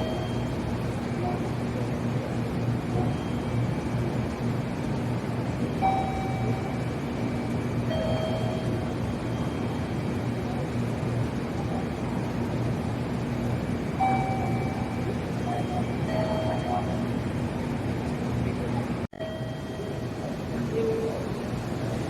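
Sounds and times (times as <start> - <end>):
short tonal beeps: 0.0 - 1.6, 2.8 - 4.0, 5.8 - 10.0, 14.0 - 17.2, 19.2 - 21.2
train rumble and hum: 0.0 - 22.0.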